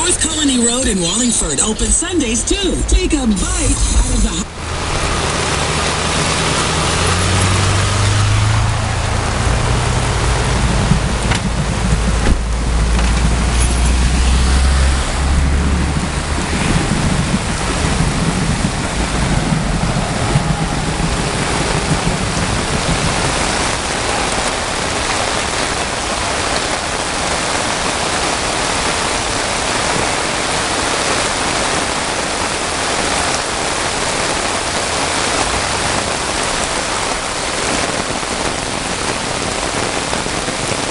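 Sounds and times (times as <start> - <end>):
low engine hum: 0.0 - 28.8
flood water rushing: 0.0 - 40.9
heavy rain hissing: 0.0 - 40.9.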